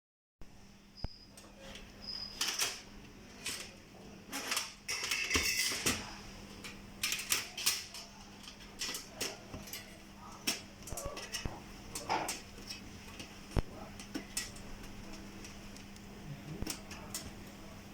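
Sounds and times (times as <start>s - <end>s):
hard parts clicking and clacking: 3.4s - 16.0s.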